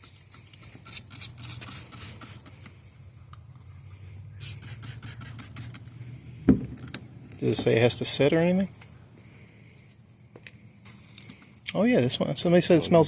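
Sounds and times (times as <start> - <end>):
spray bottle hissing sprays: 0.0 - 2.7, 4.4 - 6.0.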